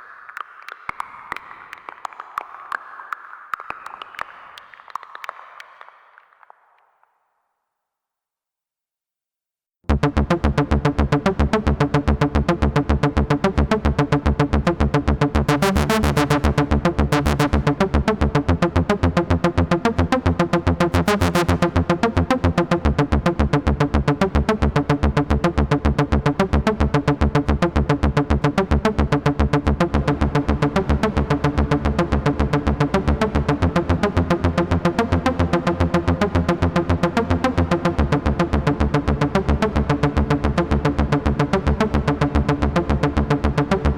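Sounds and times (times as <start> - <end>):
pulsing synth notes: 9.9 - 43.9.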